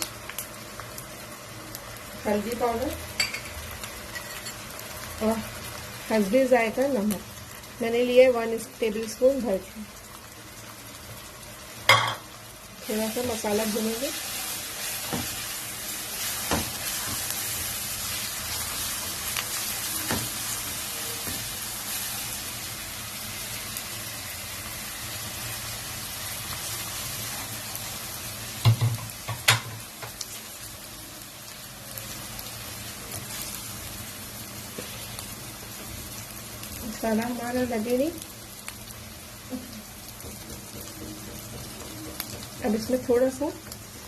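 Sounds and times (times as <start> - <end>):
masala sizzling in oil: 0.0 - 44.0
knocks against pan: 28.6 - 29.8.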